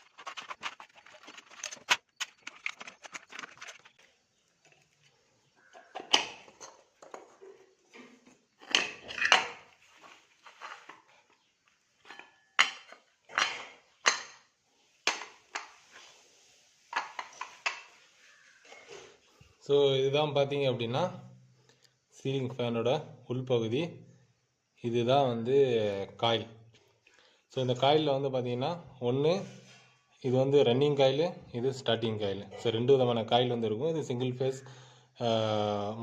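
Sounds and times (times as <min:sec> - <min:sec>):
metal parts and tools clinking: 0:00.0 - 0:04.1, 0:05.8 - 0:09.8.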